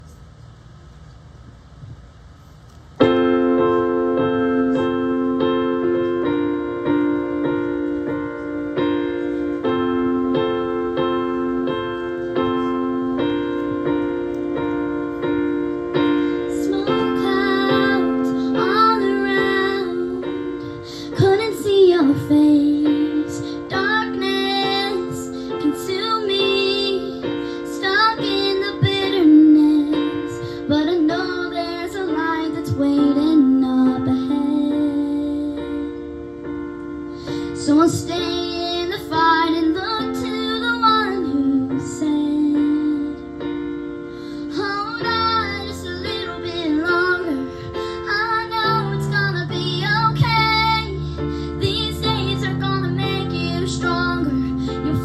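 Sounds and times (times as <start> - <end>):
keyboard playing held chords: 3.0 - 55.0
women singing melody: 44.5 - 55.0.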